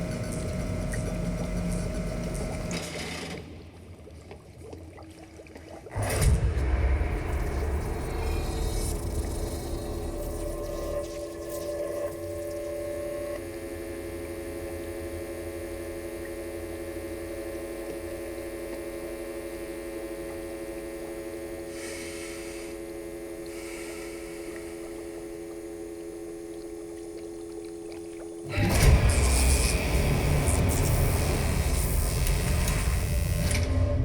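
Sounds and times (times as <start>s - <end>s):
machine drone hum: 0.0s - 3.1s, 5.9s - 34.0s
low rumble: 6.0s - 11.2s.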